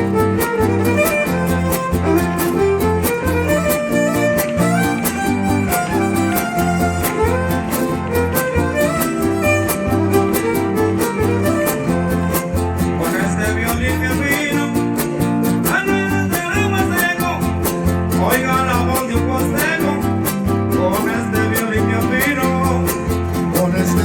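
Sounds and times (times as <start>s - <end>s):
violin melody: 0.0s - 15.5s
strummed guitars: 0.0s - 24.0s.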